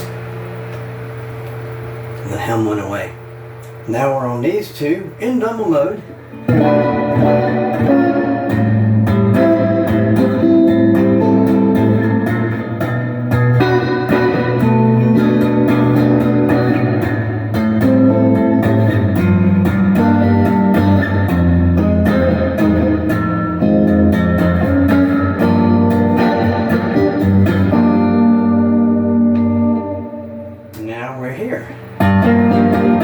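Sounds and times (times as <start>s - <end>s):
overdriven electric guitar: 6.0s - 30.8s, 31.7s - 33.0s.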